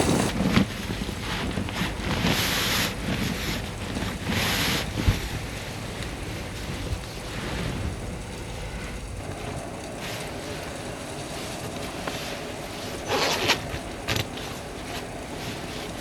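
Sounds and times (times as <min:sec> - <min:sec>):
handling noises: 0:00.0 - 0:00.7
blizzard wind buffeting: 0:00.0 - 0:13.0.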